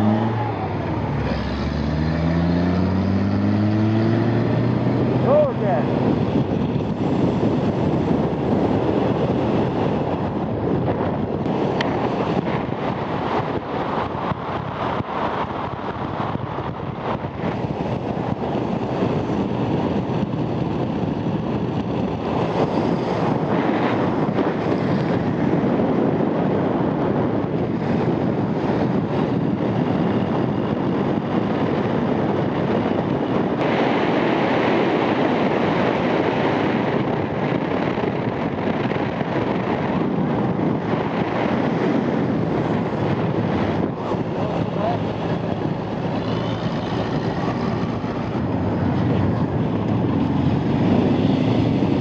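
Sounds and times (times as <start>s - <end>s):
road noise: 0.0s - 52.0s
wind rush: 0.0s - 52.0s.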